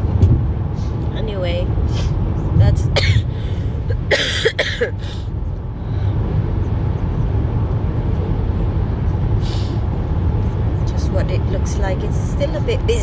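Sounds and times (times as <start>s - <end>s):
car road and engine rumble: 0.0s - 13.0s.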